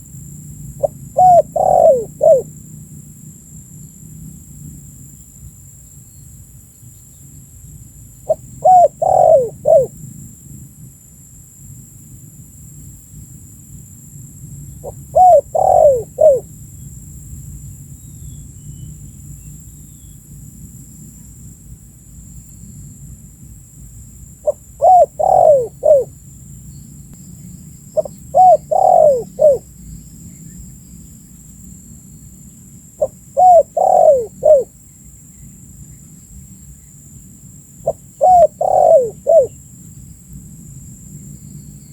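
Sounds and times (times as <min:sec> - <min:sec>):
steady low hum: 0:00.0 - 0:41.9
dove cooing: 0:00.8 - 0:02.5, 0:08.3 - 0:10.0, 0:14.8 - 0:16.5, 0:24.4 - 0:26.2, 0:28.0 - 0:29.7, 0:33.0 - 0:34.7, 0:37.8 - 0:39.6.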